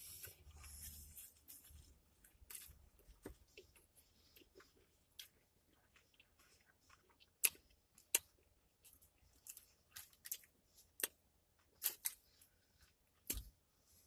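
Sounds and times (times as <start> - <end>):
chewing crisp fried food: 0.0 - 13.4.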